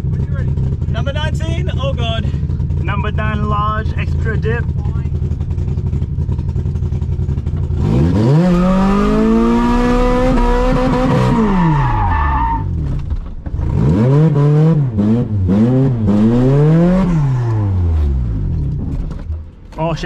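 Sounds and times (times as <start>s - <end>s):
car engine revving: 0.0s - 20.0s
tyres skidding and squealing: 7.8s - 14.0s.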